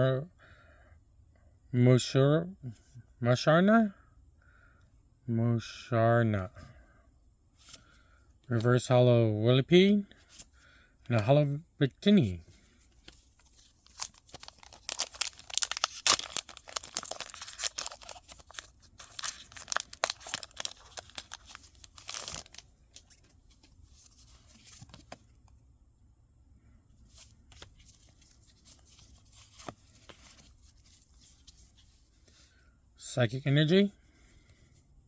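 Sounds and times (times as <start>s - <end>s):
foil wrapper tearing and crinkling: 13.5s - 23.1s.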